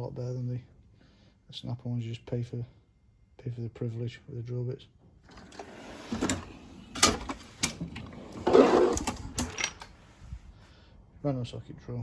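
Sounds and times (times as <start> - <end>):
tool chest drawers sliding: 5.3 - 10.0.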